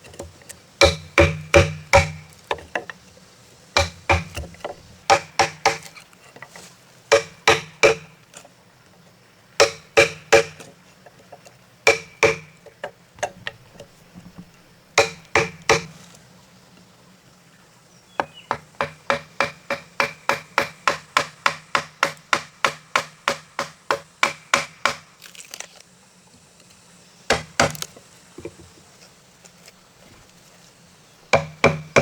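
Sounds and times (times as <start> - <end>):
hand tool striking timber post: 0.8 - 2.9, 3.8 - 5.9, 7.1 - 8.1, 9.6 - 10.7, 11.9 - 12.5, 15.0 - 15.9, 18.2 - 25.1, 31.4 - 32.0.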